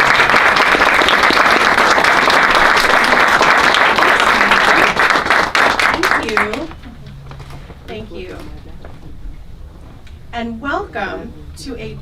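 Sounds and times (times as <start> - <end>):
audience applauding: 0.0 - 6.8.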